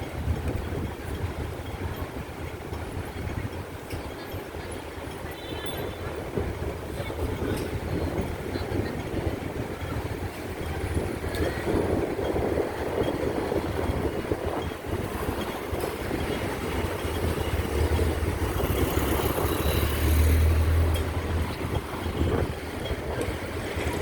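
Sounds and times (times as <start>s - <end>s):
passing vehicle engines rumbling: 0.0s - 24.0s.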